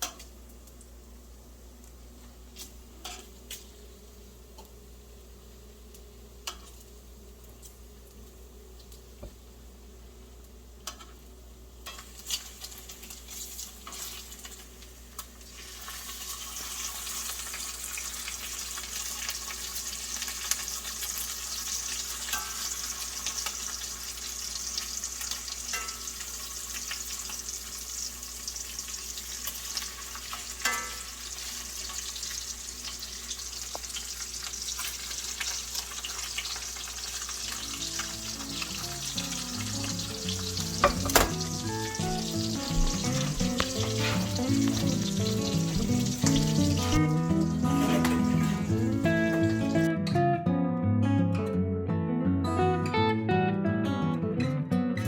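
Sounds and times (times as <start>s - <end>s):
bacon sizzling in a skillet: 2.5s - 4.3s, 11.8s - 49.9s.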